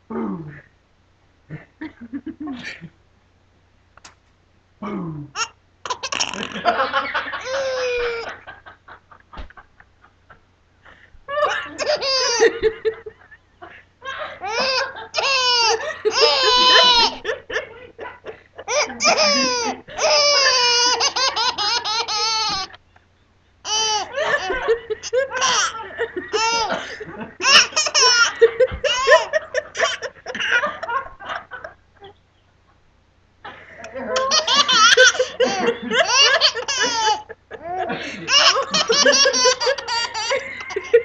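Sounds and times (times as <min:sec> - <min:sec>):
baby laughing: 0:05.4 - 0:08.4, 0:11.4 - 0:12.7, 0:14.4 - 0:22.8, 0:23.6 - 0:31.0, 0:33.8 - 0:41.0.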